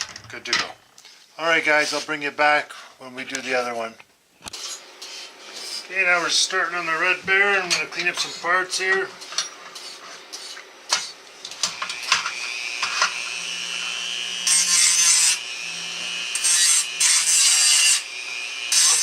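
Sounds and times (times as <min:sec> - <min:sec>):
tool scraping metal: 0:04.5 - 0:18.0
power tool motor whining: 0:09.8 - 0:19.0.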